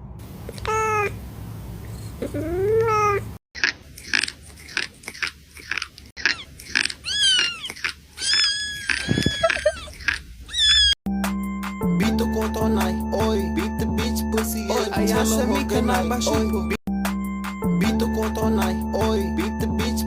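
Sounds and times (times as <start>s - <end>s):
cats meowing: 0.6s - 1.2s, 2.2s - 3.4s, 6.2s - 11.0s.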